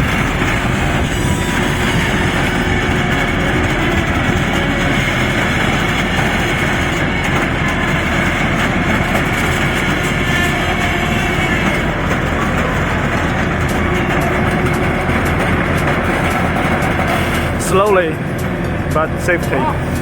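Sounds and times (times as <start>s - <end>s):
excavator diesel engine running: 0.0s - 20.0s.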